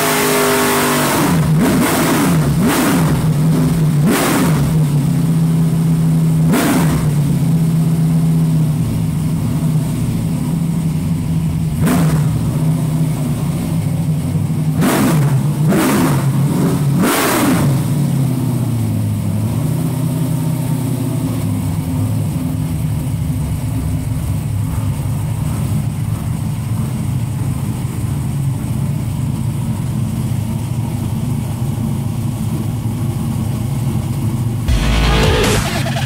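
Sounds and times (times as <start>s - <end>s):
race car engine idling: 4.7s - 14.8s
electronic music: 34.7s - 36.0s.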